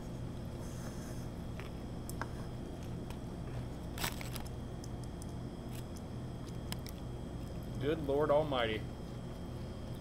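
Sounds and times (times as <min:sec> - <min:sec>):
low room hum: 0:00.0 - 0:10.0
people eating clicks and smacks: 0:04.4 - 0:07.8.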